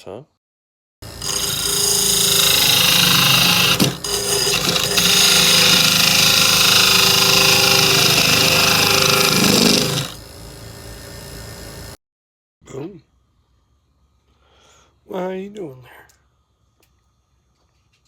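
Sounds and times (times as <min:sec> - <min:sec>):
lathe running: 0:01.0 - 0:12.0
lathe tool cutting wood: 0:01.0 - 0:12.0.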